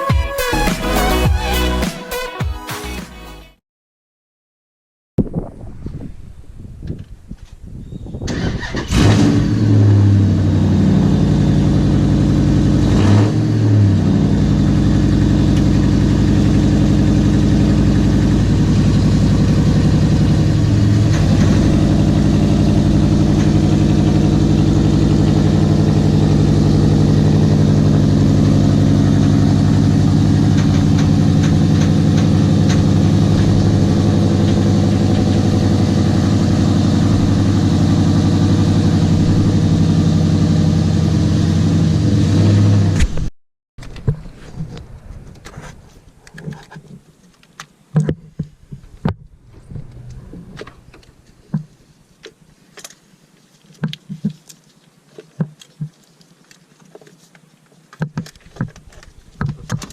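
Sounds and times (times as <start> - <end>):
vehicle engine running: 8.6 - 43.0.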